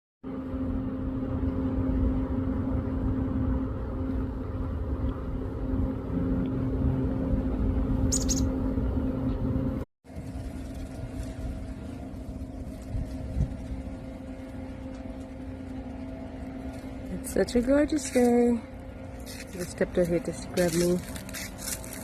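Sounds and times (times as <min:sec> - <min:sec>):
motor rumbling and humming: 0:00.2 - 0:22.0
high chirp: 0:08.0 - 0:08.6.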